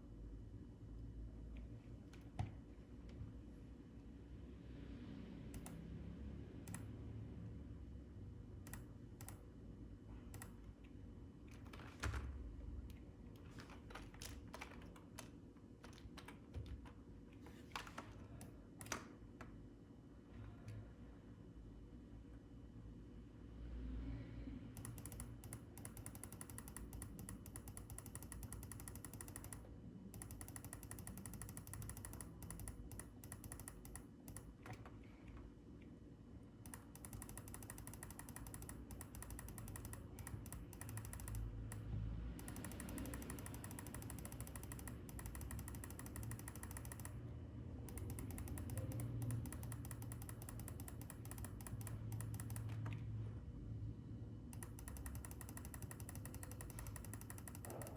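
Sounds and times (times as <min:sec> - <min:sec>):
low steady hum: 0:00.0 - 0:57.9
keyboard and mouse clicking: 0:05.5 - 0:05.8, 0:06.6 - 0:06.9, 0:08.6 - 0:09.4, 0:10.3 - 0:10.6, 0:24.8 - 0:34.9, 0:36.6 - 0:53.0, 0:54.5 - 0:57.9.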